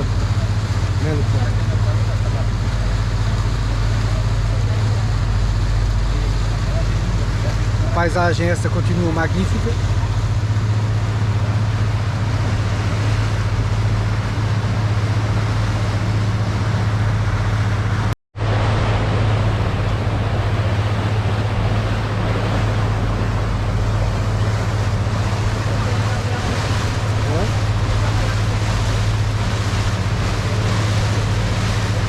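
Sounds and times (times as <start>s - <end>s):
boat engine droning: 0.0s - 32.0s
water rushing: 0.0s - 32.0s
wind: 0.0s - 32.0s.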